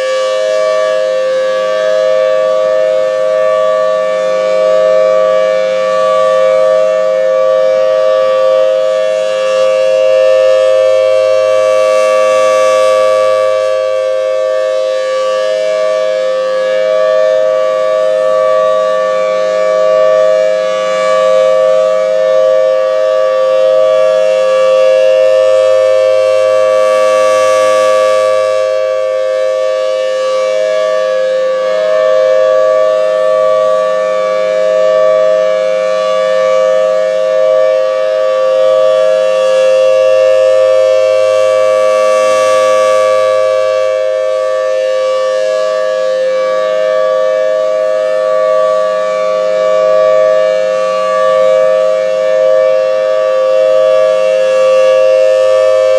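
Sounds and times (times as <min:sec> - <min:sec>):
warning siren steady tone: 0:00.0 - 0:55.9.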